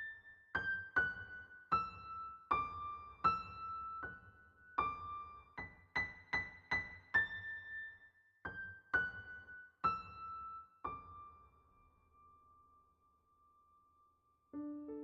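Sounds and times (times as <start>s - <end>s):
slow keyboard melody: 14.5s - 15.0s.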